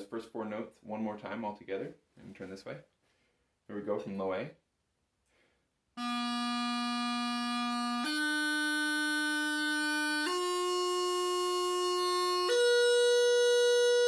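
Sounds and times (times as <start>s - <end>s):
practice chanter playing notes: 6.0s - 14.0s.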